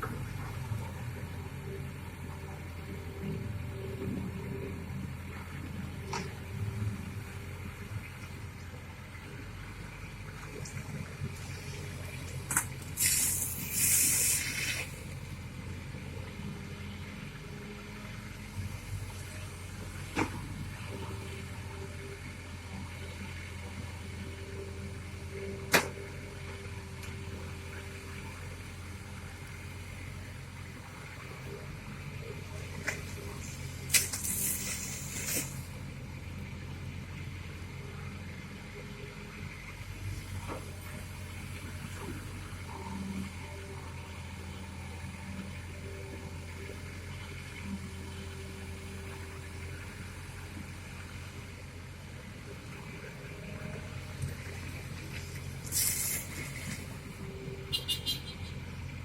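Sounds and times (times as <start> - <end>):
excavator diesel engine humming: 0.0 - 59.0
loud hiss: 13.0 - 14.9, 33.9 - 35.7, 55.6 - 56.6.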